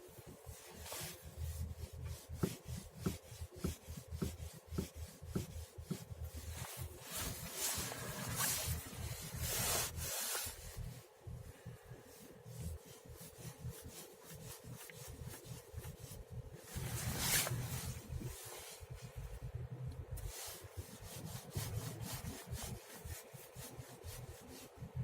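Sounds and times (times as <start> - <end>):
low hum: 14.5 - 22.9.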